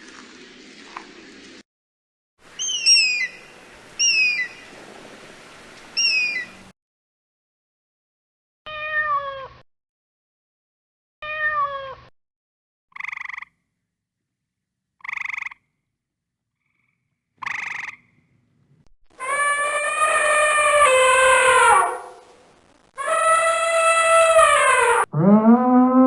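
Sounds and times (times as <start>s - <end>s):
drawn-out falling animal calls: 2.4s - 6.7s, 19.2s - 22.3s, 23.0s - 26.0s
short buzzy animal calls: 19.2s - 22.2s, 23.0s - 25.1s.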